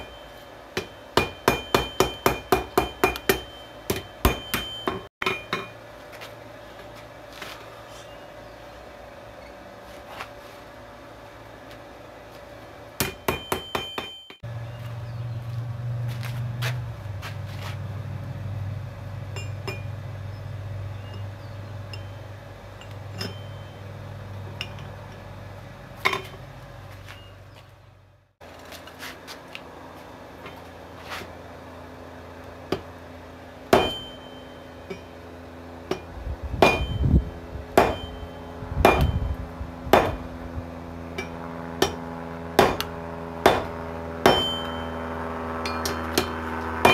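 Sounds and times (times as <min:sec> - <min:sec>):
hammer striking anvil ringing: 0:00.0 - 0:05.8, 0:13.0 - 0:14.4, 0:22.8 - 0:23.8, 0:33.7 - 0:35.2, 0:35.9 - 0:37.2, 0:37.8 - 0:39.3, 0:42.6 - 0:46.9
steady low hum: 0:00.0 - 0:46.9.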